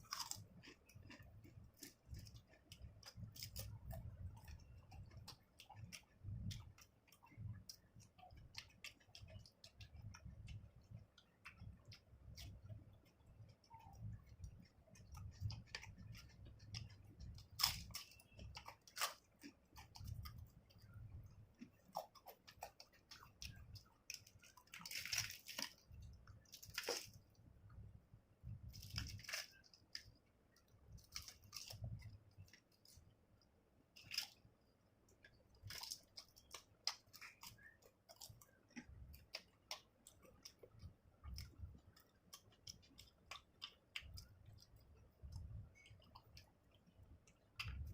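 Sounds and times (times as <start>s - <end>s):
crunching bites: 0.0s - 6.9s, 15.0s - 20.8s, 21.6s - 27.2s
person chewing food: 0.0s - 47.9s.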